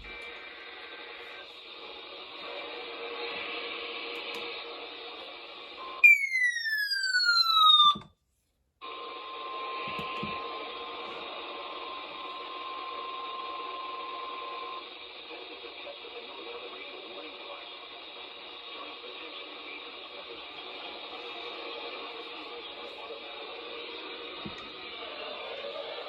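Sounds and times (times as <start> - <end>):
tone gliding downward: 6.0 - 8.0.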